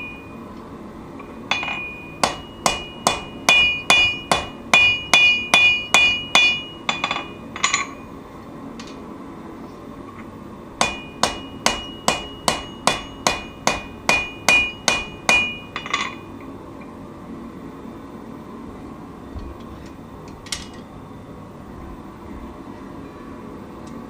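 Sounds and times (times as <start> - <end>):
hammer striking metal on anvil: 1.5 - 8.0, 10.8 - 16.3.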